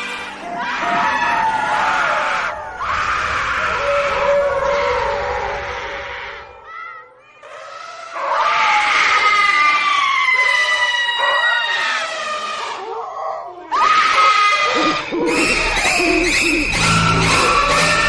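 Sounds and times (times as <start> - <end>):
eerie wailing howls: 0.0 - 18.0
rising shriek: 0.3 - 8.0, 13.8 - 18.0.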